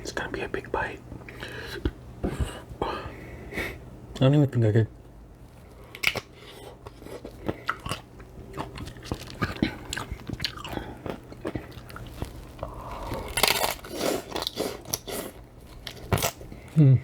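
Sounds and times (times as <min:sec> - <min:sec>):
close chewing: 0:05.9 - 0:16.5.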